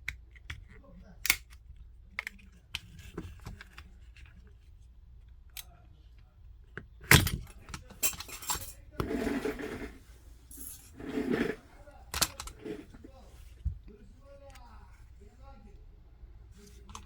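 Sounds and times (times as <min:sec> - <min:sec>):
scraping and rattling: 0:07.3 - 0:13.7.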